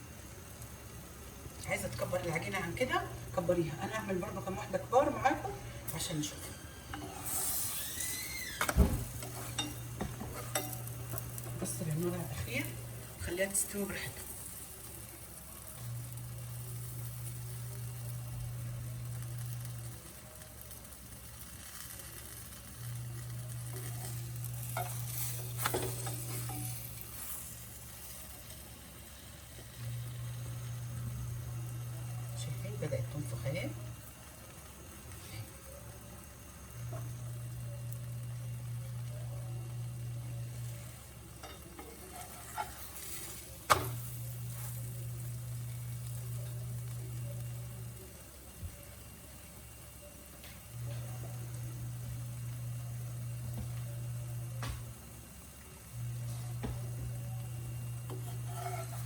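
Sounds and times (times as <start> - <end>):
dough sizzling in oil: 0.0 - 59.0
low background hum: 0.0 - 59.0
utensil scraping a pan: 6.9 - 8.3, 23.6 - 28.2, 41.4 - 44.9, 58.0 - 59.0.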